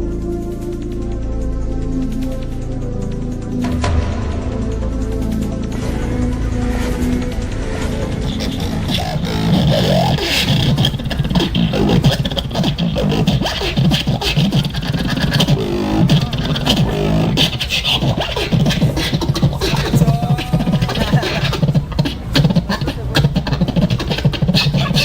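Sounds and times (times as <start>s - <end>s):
beatboxing vocal percussion: 8.1s - 25.0s
pitched mouth hums: 8.2s - 25.0s.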